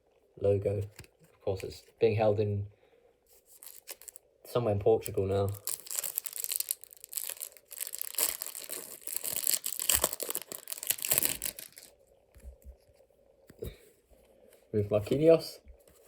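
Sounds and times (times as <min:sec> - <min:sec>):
foil wrapper tearing and crinkling: 0:03.5 - 0:04.2, 0:05.1 - 0:11.9.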